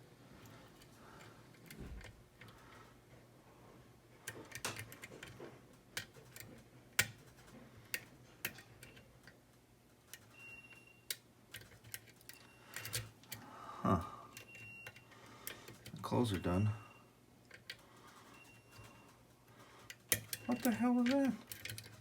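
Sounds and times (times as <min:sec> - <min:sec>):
lock pick clicking on pins: 0:04.2 - 0:09.4, 0:10.1 - 0:13.4, 0:19.8 - 0:22.0.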